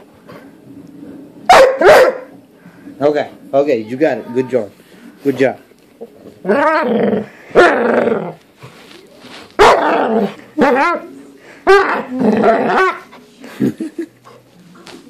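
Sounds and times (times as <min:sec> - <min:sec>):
dog barking and yowling: 0:01.5 - 0:02.4, 0:09.6 - 0:13.1.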